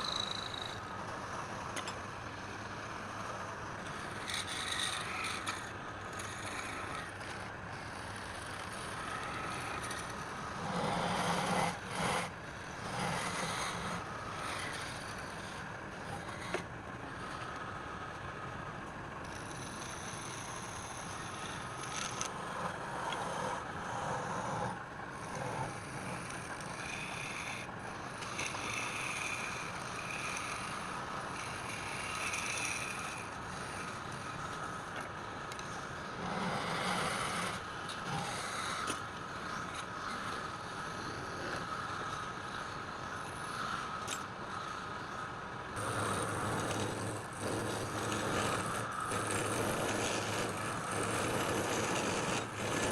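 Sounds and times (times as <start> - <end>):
wood lathe running: 3.2 - 18.4, 19.2 - 38.9, 45.8 - 52.9
turning tool scraping wood: 3.3 - 17.7, 19.2 - 42.2, 45.8 - 52.9.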